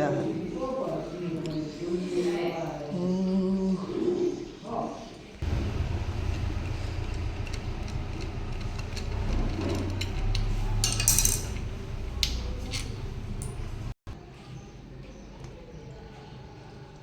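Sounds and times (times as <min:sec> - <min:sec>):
steady low hum: 0:05.4 - 0:14.0
metal tools and bolts clinking: 0:06.3 - 0:13.9.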